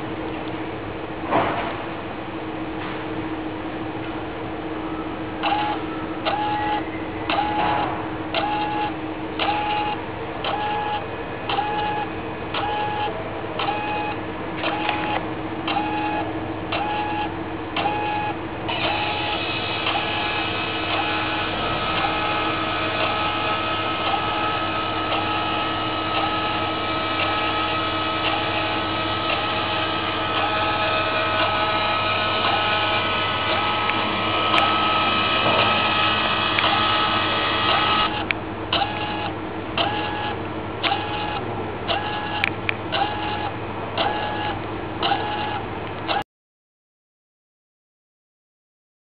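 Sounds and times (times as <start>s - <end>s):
motor clicks: 5.4s - 46.2s
welding carriage motor whirring: 17.8s - 39.1s.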